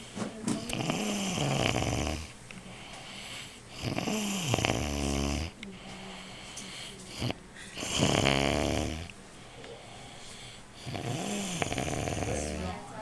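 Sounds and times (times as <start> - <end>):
man snoring: 0.7 - 2.3, 3.7 - 5.6, 7.2 - 9.1, 10.8 - 12.8.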